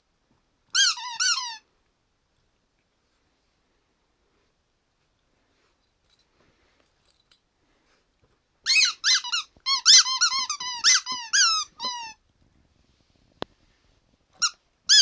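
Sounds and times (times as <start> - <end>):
squeaky toy squeaking: 0.7 - 1.6, 8.7 - 12.2, 14.4 - 15.0.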